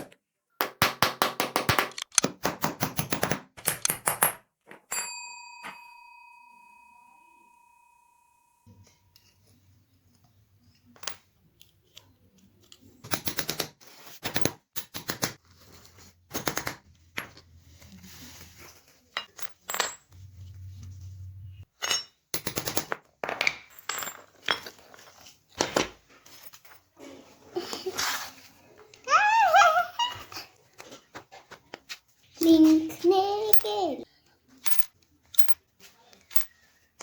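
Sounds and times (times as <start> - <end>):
metal padlock clinking and rattling: 1.9 - 5.0, 34.6 - 35.6, 36.2 - 36.6.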